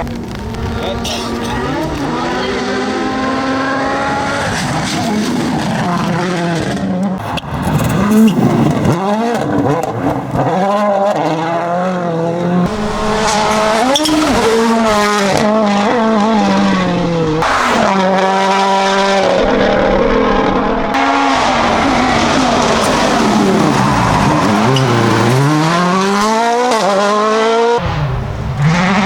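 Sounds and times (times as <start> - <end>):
exhaust pops: 0.0 - 2.2
rally car engine revving: 0.0 - 29.0.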